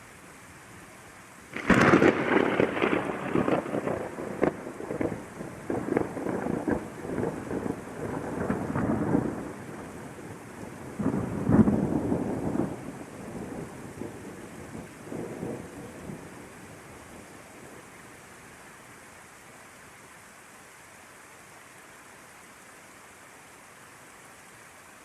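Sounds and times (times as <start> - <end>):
steady rainfall: 0.0 - 25.0
rolling thunder: 1.5 - 16.4.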